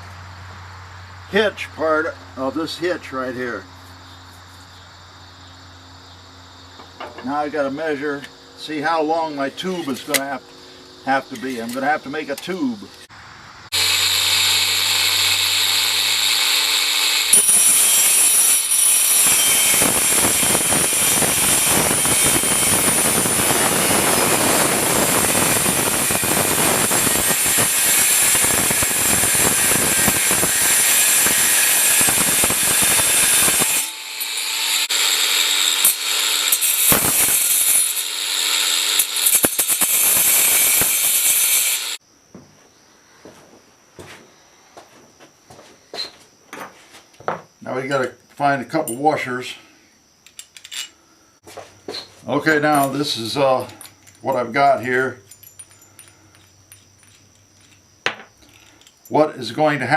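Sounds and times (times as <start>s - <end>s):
power saw motor whining: 13.7s - 42.0s
saw grinding through metal pipe: 13.7s - 42.0s.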